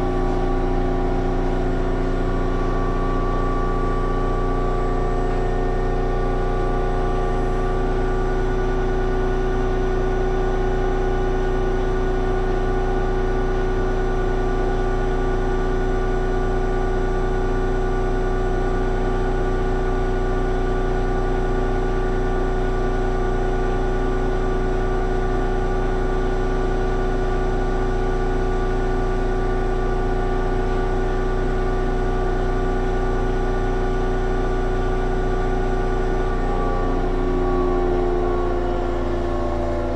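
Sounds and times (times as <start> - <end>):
washing machine spinning: 34.2 - 39.9.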